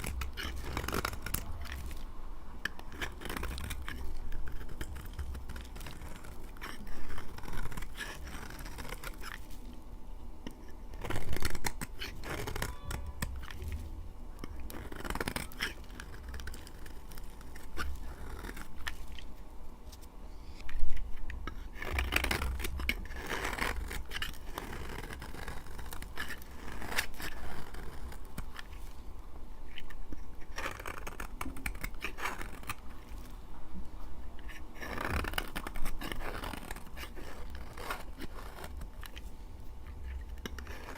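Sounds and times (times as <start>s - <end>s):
blade cutting soap: 0.0s - 19.5s, 20.5s - 29.0s, 29.6s - 33.4s, 34.4s - 40.9s.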